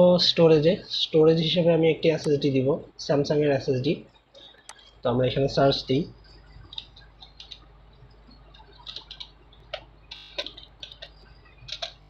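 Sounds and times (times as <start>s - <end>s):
faint low hum: 0.0s - 12.0s
keyboard typing: 6.2s - 12.0s.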